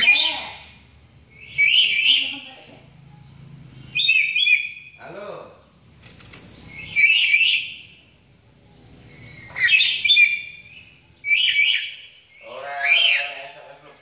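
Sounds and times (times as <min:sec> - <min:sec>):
bird calling in high bursts: 0:01.3 - 0:02.5, 0:03.9 - 0:05.0, 0:06.7 - 0:08.0, 0:09.3 - 0:13.6.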